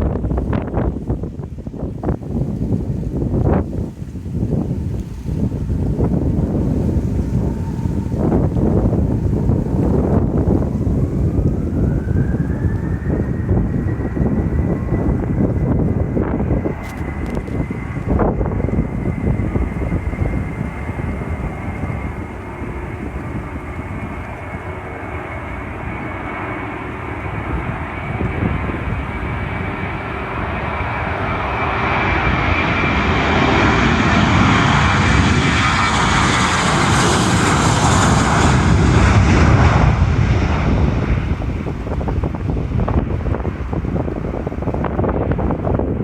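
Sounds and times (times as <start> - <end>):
jet engines whining: 0.0 - 46.0
wind buffeting microphone: 0.0 - 46.0.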